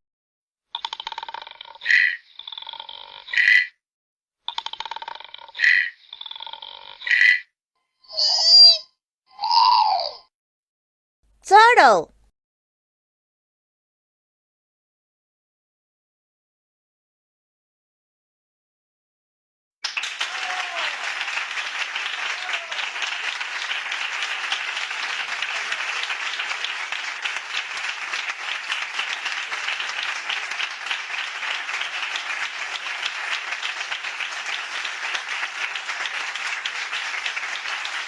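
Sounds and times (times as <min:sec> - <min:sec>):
crowd applauding: 0:19.8 - 0:38.0.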